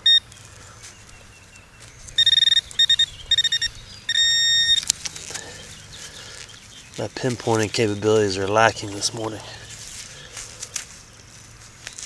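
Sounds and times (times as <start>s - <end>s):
metal detector pinpointer beeping: 0.0s - 0.3s, 2.1s - 5.0s.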